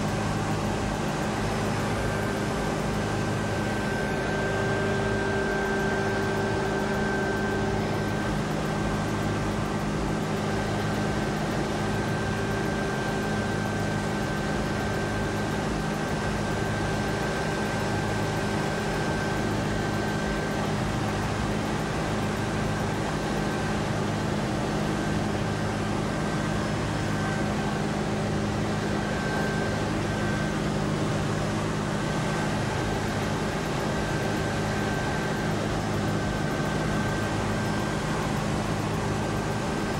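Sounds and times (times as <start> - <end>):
mechanical drone with pulsing throb: 0.0 - 39.9.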